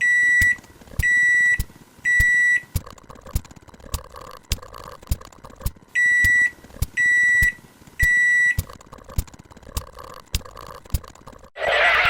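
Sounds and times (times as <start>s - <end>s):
microwave high beeps: 0.0s - 2.7s, 6.0s - 8.7s
microwave hum with clicks: 0.0s - 11.1s.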